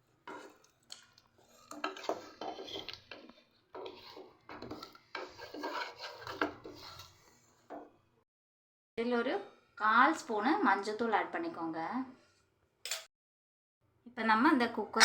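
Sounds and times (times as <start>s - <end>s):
spoon scraping in a cooking pot: 0.0s - 8.0s.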